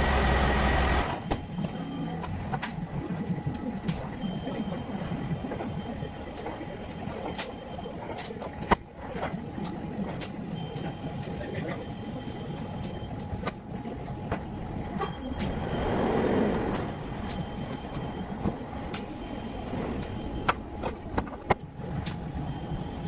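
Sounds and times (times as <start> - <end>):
thin high whine: 0.0 - 2.4, 3.8 - 8.4, 10.5 - 13.2, 15.0 - 20.9, 22.3 - 23.0
steady workshop hum: 0.0 - 23.0.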